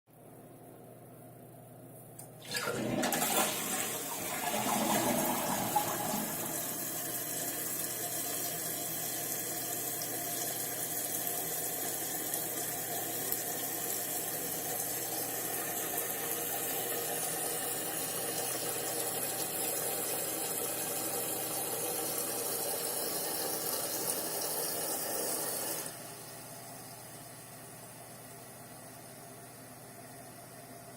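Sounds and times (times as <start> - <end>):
water hissing through fill valve: 2.4 - 9.6, 21.7 - 26.2
toilet bowl draining: 2.4 - 12.6.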